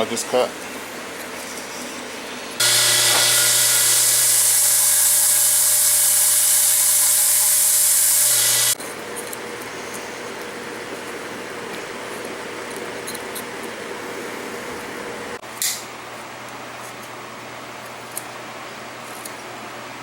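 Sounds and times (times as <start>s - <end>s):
power tool running on wood: 2.6s - 8.8s.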